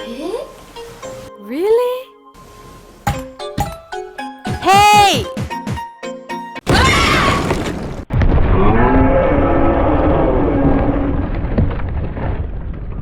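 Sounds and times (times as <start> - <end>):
low bellowing roar: 8.4 - 11.6.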